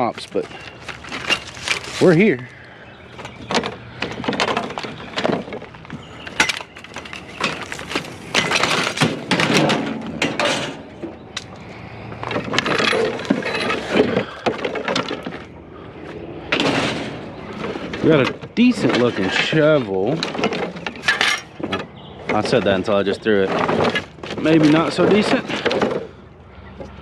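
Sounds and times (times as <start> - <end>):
hard objects clattering: 0.0 - 26.2.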